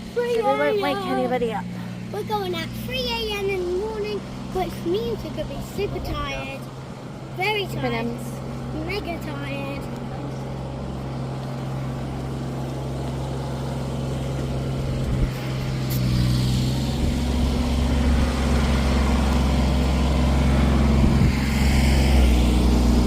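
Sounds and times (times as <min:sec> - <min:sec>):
engine humming: 0:00.0 - 0:23.0.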